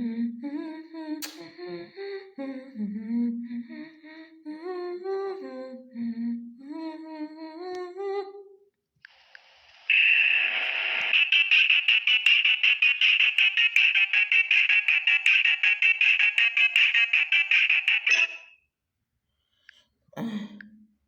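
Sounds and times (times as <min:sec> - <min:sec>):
sharp click: 0:01.2 - 0:01.5.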